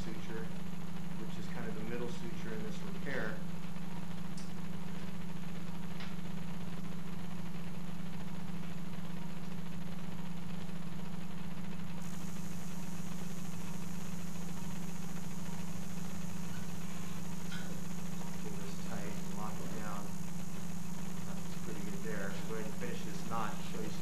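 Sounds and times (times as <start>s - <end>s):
low machine hum: 0.0s - 24.0s
high hiss: 12.0s - 24.0s.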